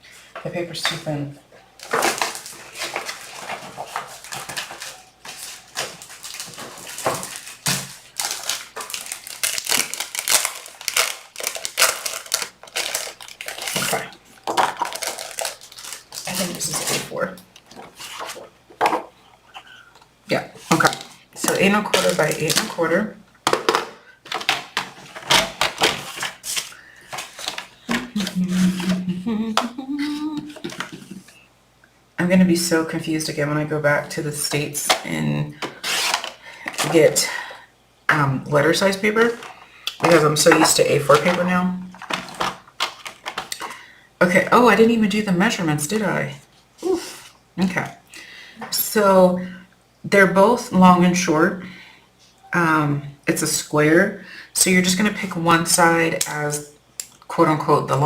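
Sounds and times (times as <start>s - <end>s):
paper rustling and crinkling: 1.8s - 18.5s, 20.6s - 22.9s, 24.2s - 29.0s, 35.6s - 37.2s, 39.3s - 43.7s
person humming: 27.9s - 31.2s, 46.8s - 47.2s.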